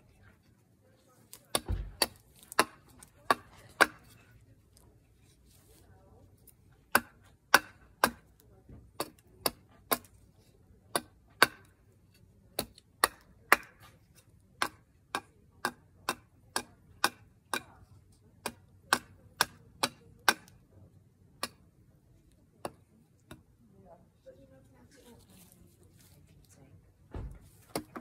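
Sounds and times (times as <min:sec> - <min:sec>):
hatchet chopping wood: 0:01.3 - 0:04.3, 0:06.5 - 0:20.7, 0:21.3 - 0:23.6, 0:27.1 - 0:28.0.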